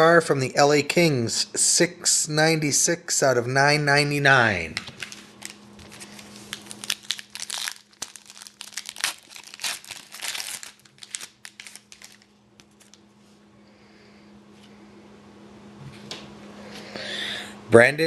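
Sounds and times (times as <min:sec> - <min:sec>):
plastic wrapper crinkling and tearing: 0:04.8 - 0:13.0.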